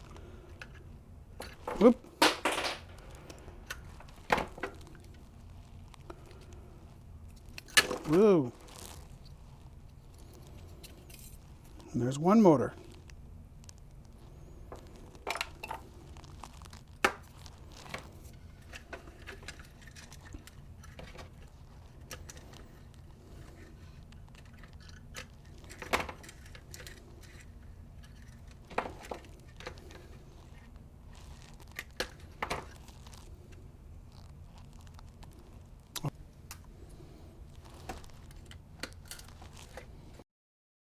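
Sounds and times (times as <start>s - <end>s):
low steady hum: 0.0s - 40.2s.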